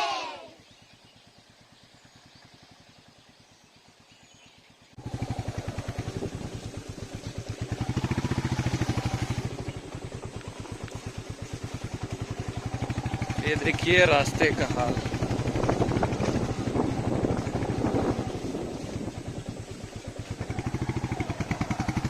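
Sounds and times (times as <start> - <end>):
motorcycle engine thumping: 5.0 - 22.0.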